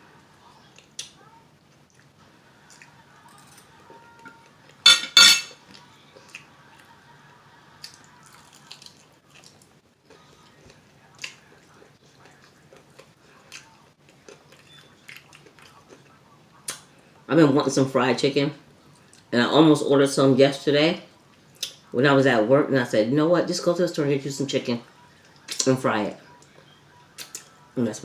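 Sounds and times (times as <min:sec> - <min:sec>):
cutlery clinking on dishes: 0:03.3 - 0:05.7.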